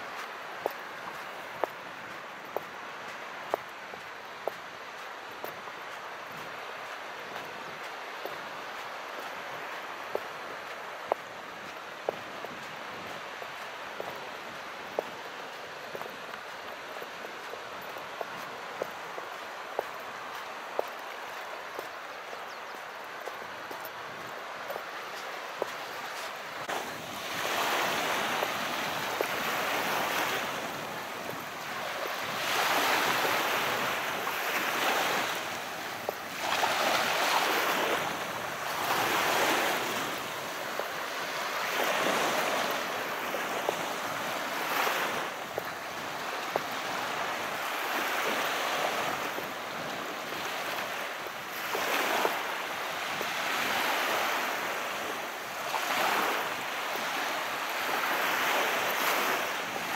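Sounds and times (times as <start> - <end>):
waves washing onto shore: 0.0 - 59.9.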